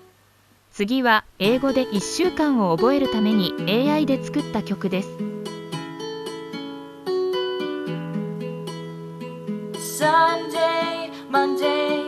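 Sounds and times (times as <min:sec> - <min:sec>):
strummed acoustic guitar: 0:01.6 - 0:12.0
person singing: 0:09.8 - 0:12.0.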